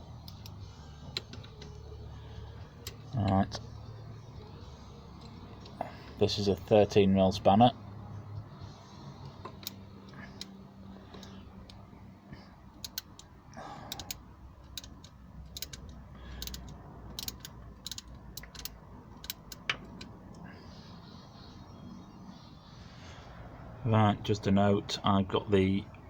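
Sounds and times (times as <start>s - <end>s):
spanner clicking on bolt: 2.8s - 3.1s, 12.8s - 20.2s.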